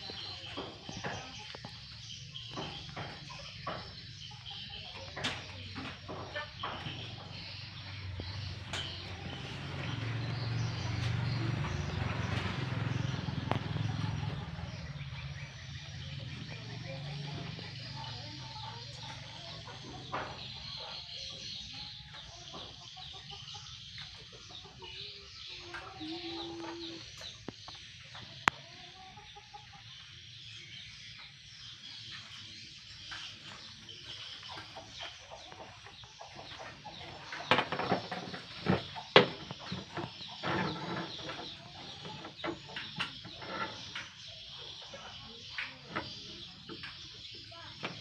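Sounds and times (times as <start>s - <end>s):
chickens clucking: 0.0s - 48.0s.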